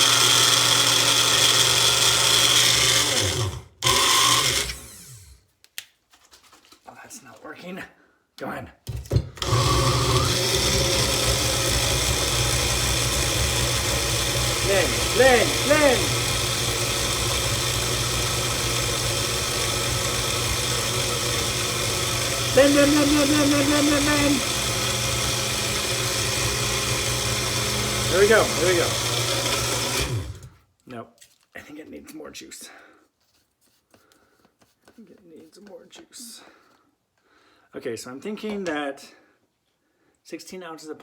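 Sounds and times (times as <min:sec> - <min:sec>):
blender motor running: 0:00.0 - 0:05.4, 0:09.4 - 0:30.6.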